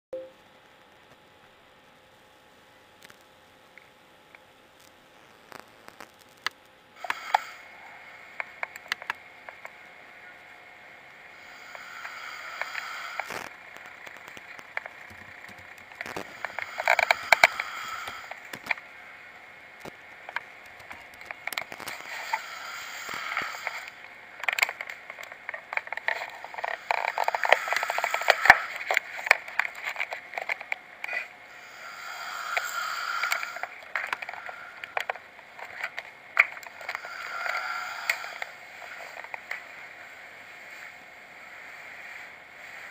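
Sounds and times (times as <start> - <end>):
person snoring: 11.3 - 13.5, 16.1 - 18.5, 21.8 - 24.0, 31.5 - 35.0, 36.7 - 39.2.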